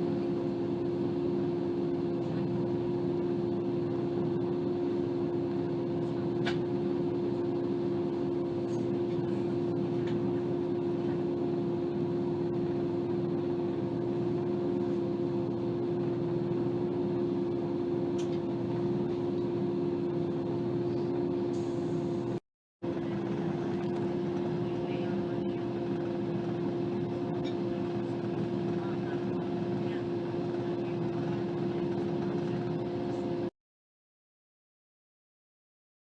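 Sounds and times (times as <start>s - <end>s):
train mechanical hum: 0.0s - 33.5s.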